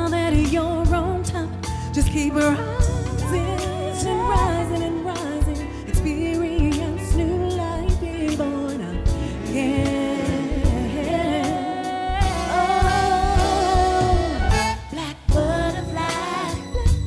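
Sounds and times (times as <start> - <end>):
gospel soul band: 0.0 - 17.0
people singing: 9.4 - 17.0.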